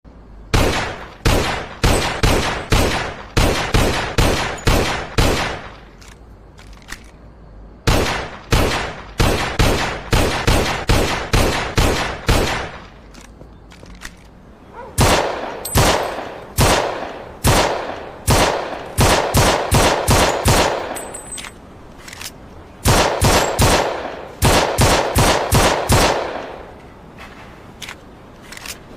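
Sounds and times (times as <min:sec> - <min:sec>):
pistol gunshots: 0:00.5 - 0:06.0, 0:07.8 - 0:13.0, 0:14.8 - 0:21.5, 0:22.8 - 0:26.7.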